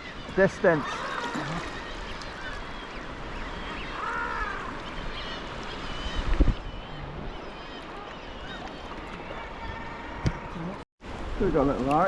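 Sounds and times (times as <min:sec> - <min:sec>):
seabird calls: 0:00.0 - 0:10.8
water sloshing around kayak: 0:00.2 - 0:03.8.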